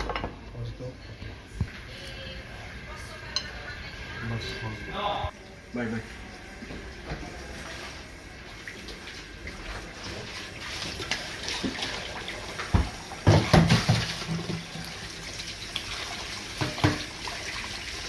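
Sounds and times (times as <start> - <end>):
water running from tap: 5.8 - 18.0.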